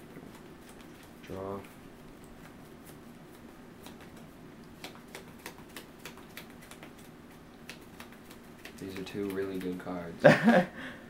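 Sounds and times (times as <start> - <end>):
faint steady hum: 0.0 - 11.0
trading cards clicking on table: 3.8 - 10.0.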